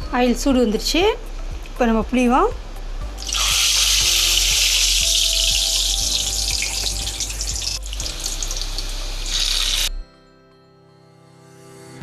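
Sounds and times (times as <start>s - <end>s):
dough sizzling in hot oil: 3.2s - 10.0s.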